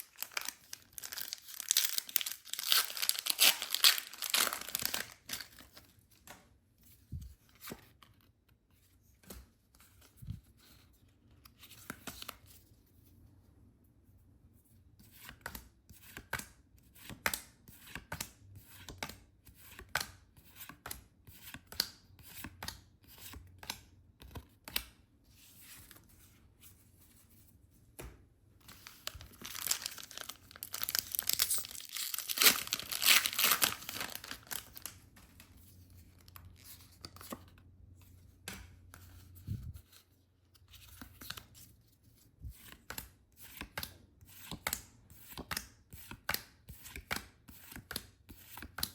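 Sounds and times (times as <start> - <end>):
packaging tearing and crinkling: 0.0 - 5.6, 29.1 - 34.9.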